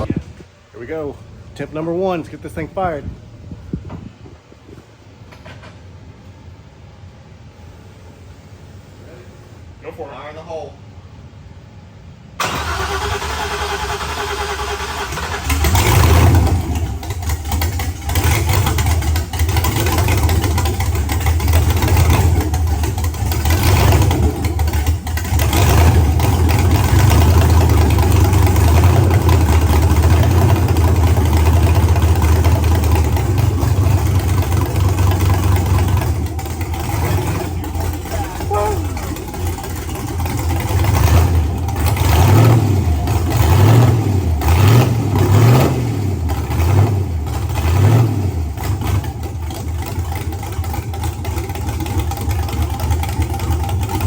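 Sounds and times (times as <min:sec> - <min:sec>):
car engine starting and revving: 0:12.4 - 0:54.0.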